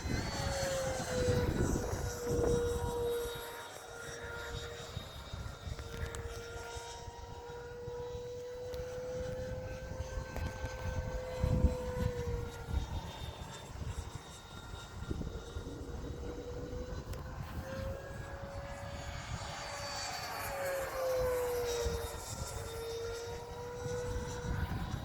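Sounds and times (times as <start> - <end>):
wind buffeting microphone: 0.0 - 3.6, 8.9 - 25.0
electric jet whining in flight: 0.0 - 25.0.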